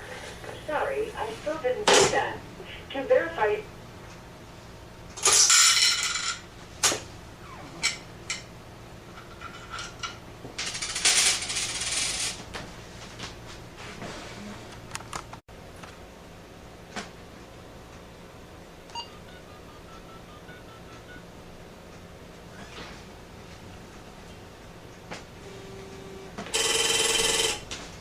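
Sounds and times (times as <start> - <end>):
coins rattling through payphone: 10.6 - 12.4.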